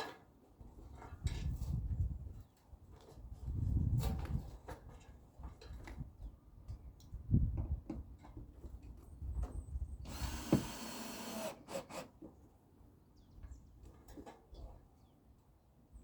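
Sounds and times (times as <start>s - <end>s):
power drill driving a fastener: 10.1s - 12.1s.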